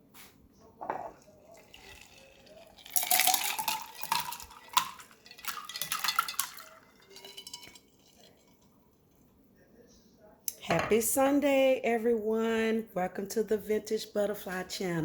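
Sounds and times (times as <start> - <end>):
dishes and utensils clattering: 0.8 - 8.7
water splashing: 1.3 - 8.5.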